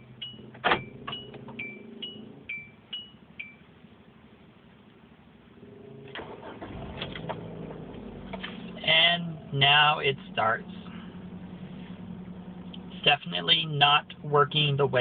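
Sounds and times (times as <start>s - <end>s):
car engine cranking: 0.0s - 2.5s, 5.6s - 14.3s
car warning chime pinging: 0.0s - 3.8s
car engine idling: 4.0s - 15.0s.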